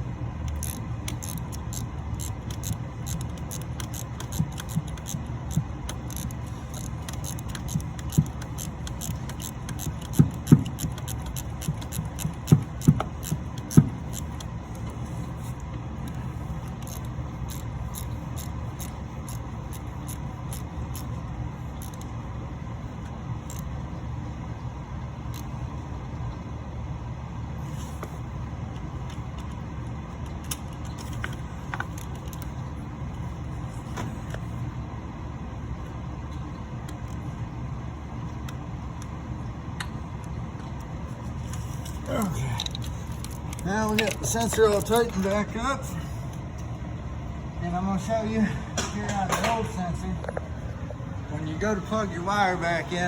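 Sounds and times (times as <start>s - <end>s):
steady low rumble: 0.0s - 53.0s
hand ratchet clicking: 0.4s - 15.0s, 16.1s - 21.2s, 21.8s - 22.1s, 41.5s - 45.4s.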